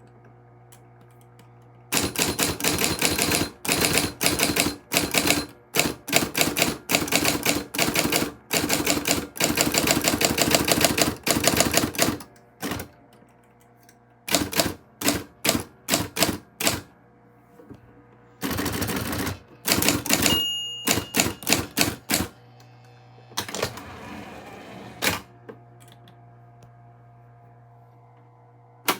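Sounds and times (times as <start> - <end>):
typewriter keystrikes: 2.0 - 12.9, 14.3 - 16.9, 18.4 - 22.3
typewriter bell ding: 19.8 - 22.2.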